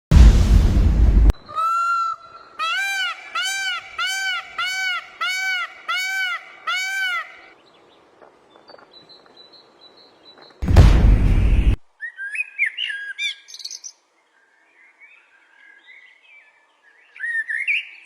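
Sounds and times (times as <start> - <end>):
peacock calling: 1.4 - 7.6.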